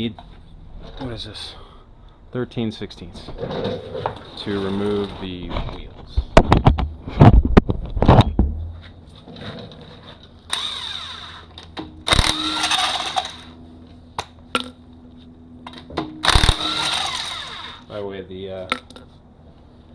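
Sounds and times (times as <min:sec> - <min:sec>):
impact wrench bursts: 0:10.5 - 0:13.6, 0:16.2 - 0:17.9.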